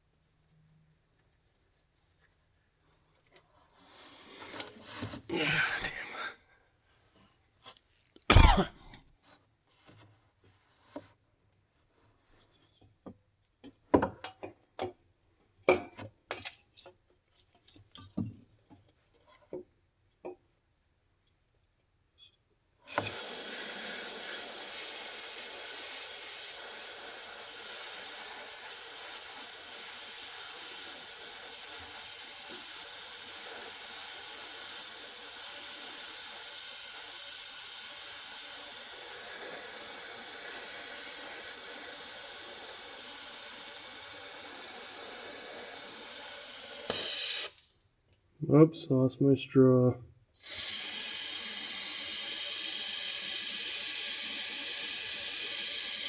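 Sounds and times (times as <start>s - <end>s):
aerosol can spraying: 23.0s - 47.7s, 50.4s - 56.0s.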